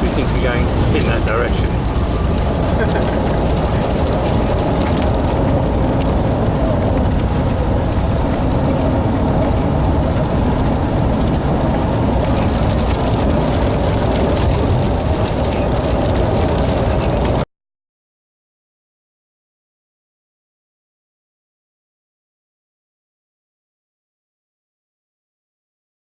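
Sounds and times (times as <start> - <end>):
car road and engine noise: 0.0 - 17.5.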